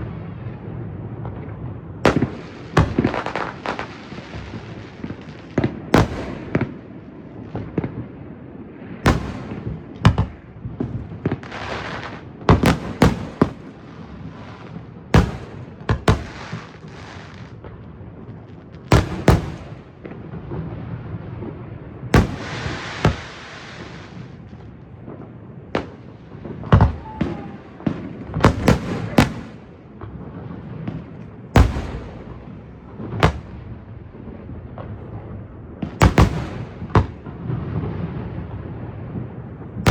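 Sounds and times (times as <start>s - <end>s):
firework shells booming: 2.1s - 6.9s, 9.0s - 17.8s, 18.8s - 20.6s, 21.4s - 24.4s, 25.1s - 38.5s, 39.7s - 39.9s
firework crackling hiss: 11.4s - 17.5s, 22.2s - 24.4s.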